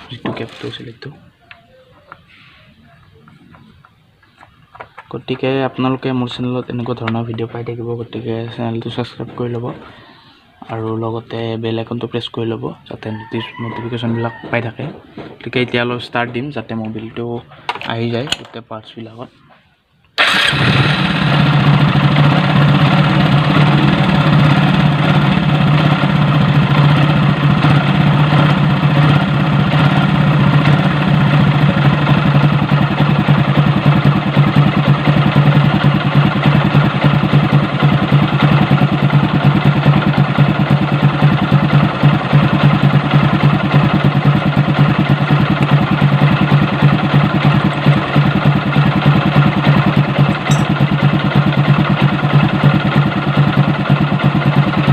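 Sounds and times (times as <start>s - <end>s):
motorcycle engine idling: 20.2s - 54.9s.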